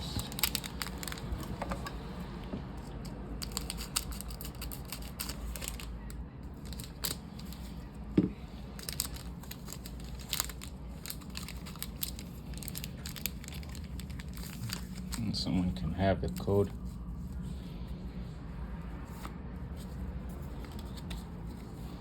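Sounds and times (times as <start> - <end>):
wrapper crinkling and tearing: 0.0 - 1.6, 3.4 - 7.7, 8.7 - 15.4.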